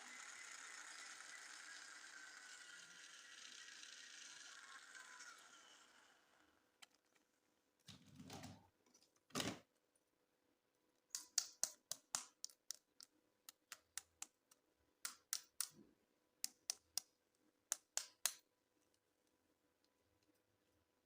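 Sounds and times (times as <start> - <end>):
sharp plastic clicks and taps: 11.1 - 15.8, 16.4 - 17.1, 17.7 - 18.4.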